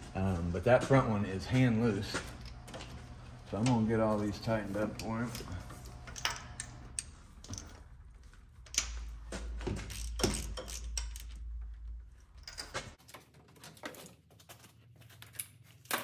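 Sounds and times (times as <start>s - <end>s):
ratchet clicking: 9.8s - 11.4s.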